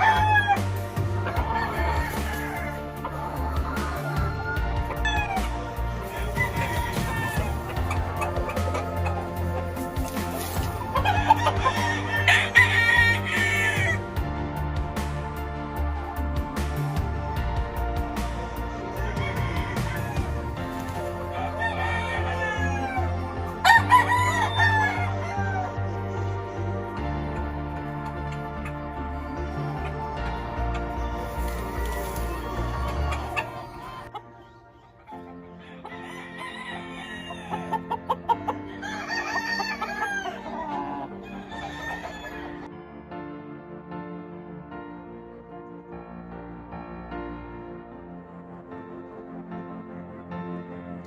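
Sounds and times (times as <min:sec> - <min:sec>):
rooster crowing: 0:00.0 - 0:10.3, 0:10.9 - 0:14.1, 0:18.4 - 0:26.0, 0:35.0 - 0:42.7
rooster clucking: 0:00.0 - 0:14.0, 0:18.0 - 0:42.7
background music: 0:00.0 - 0:51.0.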